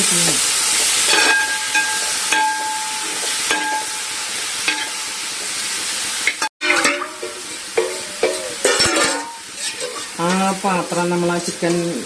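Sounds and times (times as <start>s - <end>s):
chicken sizzling in a pan: 0.0s - 12.0s
spoon scraping pan with squeaks: 9.4s - 10.2s.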